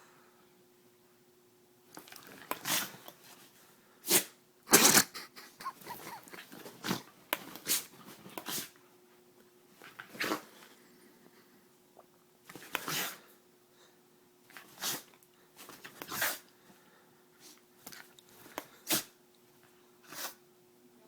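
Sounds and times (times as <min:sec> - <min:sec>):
dog sneezing: 0:02.6 - 0:02.9, 0:04.0 - 0:07.0, 0:12.8 - 0:13.2, 0:14.6 - 0:15.1, 0:16.0 - 0:16.4, 0:18.8 - 0:19.2, 0:20.0 - 0:20.4.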